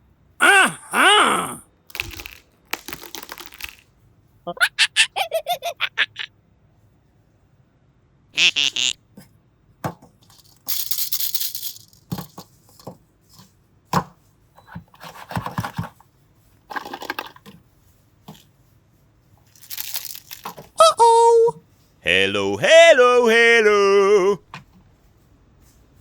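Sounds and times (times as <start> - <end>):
packaging tearing and crinkling: 1.9 - 3.9, 19.5 - 20.7.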